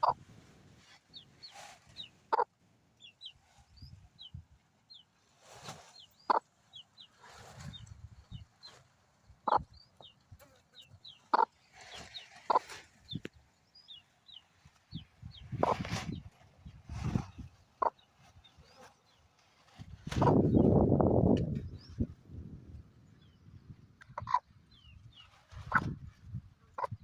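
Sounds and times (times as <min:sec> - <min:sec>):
chicken clucking: 0:00.0 - 0:00.2, 0:01.1 - 0:03.4, 0:05.8 - 0:08.8, 0:09.4 - 0:18.3, 0:24.0 - 0:26.1, 0:26.7 - 0:27.0.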